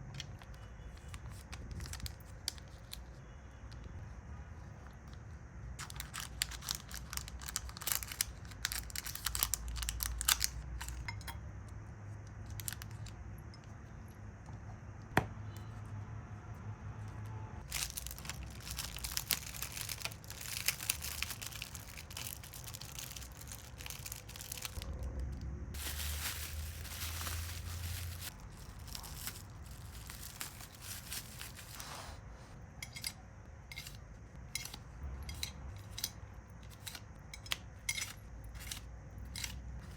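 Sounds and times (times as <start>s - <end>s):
packaging crinkling and tearing: 0.3s - 3.2s, 5.8s - 11.1s, 12.5s - 13.2s, 17.6s - 32.2s.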